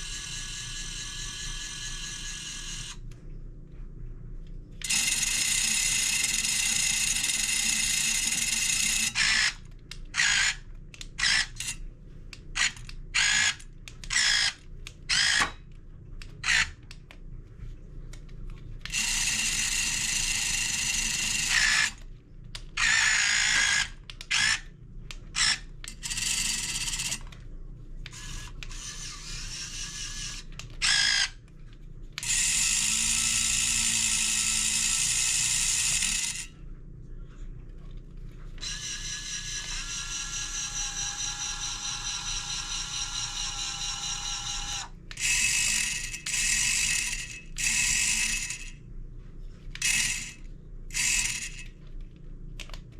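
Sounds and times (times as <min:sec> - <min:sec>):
toy electric motor whine: 0:00.0 - 0:03.0, 0:04.8 - 0:11.8, 0:12.6 - 0:15.6, 0:16.4 - 0:16.8, 0:18.9 - 0:22.0, 0:22.8 - 0:24.7, 0:25.4 - 0:27.3, 0:28.1 - 0:31.4, 0:32.2 - 0:36.5, 0:38.6 - 0:48.8, 0:49.8 - 0:51.8.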